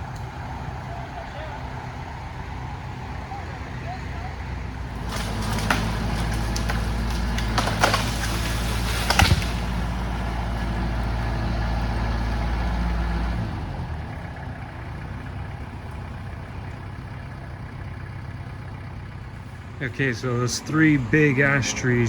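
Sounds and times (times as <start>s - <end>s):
engine idling: 0.0s - 22.0s
sharp knocks: 5.0s - 9.8s.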